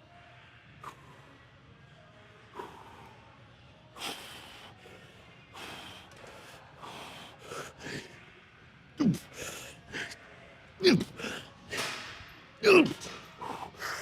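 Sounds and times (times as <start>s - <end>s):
man breathing hard: 4.0s - 8.2s, 9.0s - 10.2s, 12.6s - 14.0s.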